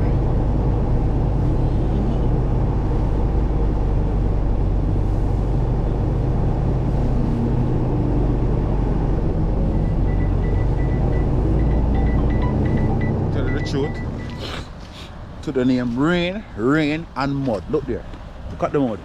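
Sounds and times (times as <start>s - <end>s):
diesel engine drone: 0.0s - 17.3s
rapid high beeping: 9.8s - 14.4s.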